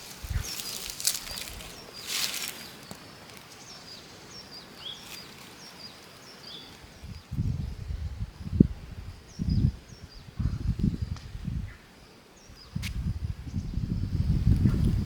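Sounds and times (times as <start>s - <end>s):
rustling: 0.0s - 3.6s
small birds chirping: 0.0s - 15.0s.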